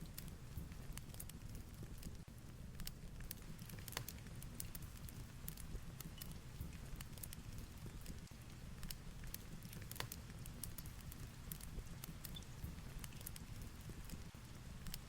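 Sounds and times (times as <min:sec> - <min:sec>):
fireplace crackling and popping: 0:00.0 - 0:15.0.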